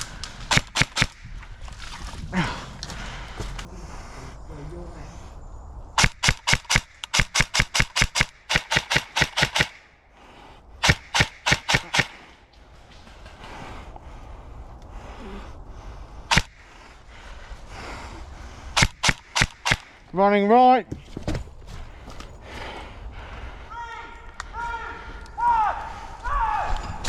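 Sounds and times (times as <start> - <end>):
airsoft gun shots: 0.5 - 1.3, 6.0 - 9.9, 10.8 - 12.4, 16.3 - 16.6, 18.8 - 20.0.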